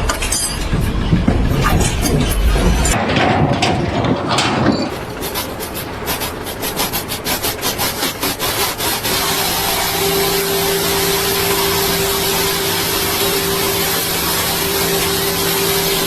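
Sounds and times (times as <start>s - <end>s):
irregular clattering: 0.1s - 9.4s
rhythmic scraping strokes: 0.6s - 16.0s
steady hum: 0.6s - 16.0s.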